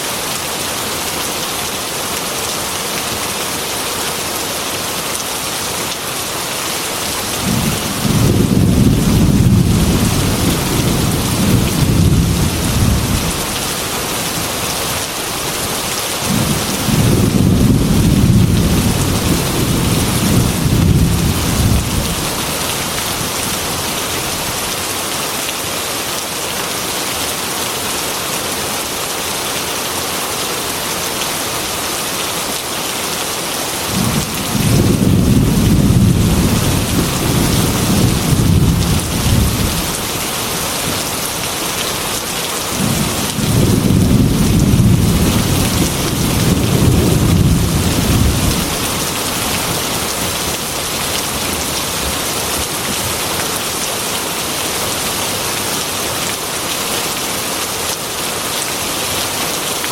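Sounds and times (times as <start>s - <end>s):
heavy rain falling: 0.0s - 59.9s
low thunder rumbles: 7.4s - 13.6s, 16.2s - 23.0s, 33.9s - 40.2s, 42.7s - 49.9s.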